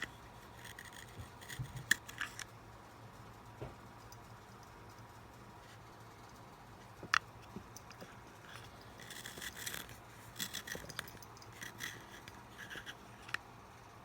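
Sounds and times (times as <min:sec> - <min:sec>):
pencil sharpener rasping: 0:00.0 - 0:02.4, 0:07.9 - 0:13.4.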